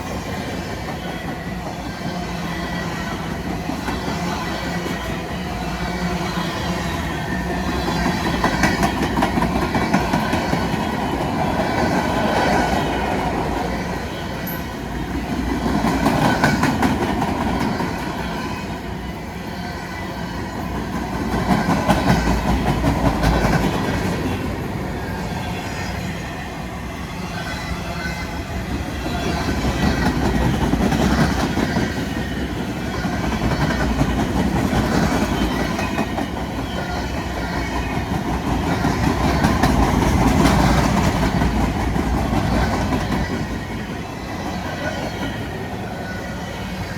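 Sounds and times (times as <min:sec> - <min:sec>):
freight train rumble: 0:00.0 - 0:46.9.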